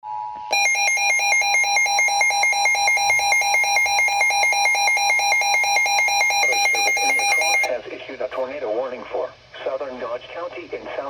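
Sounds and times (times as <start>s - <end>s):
two-tone electronic alarm: 0.5s - 7.7s.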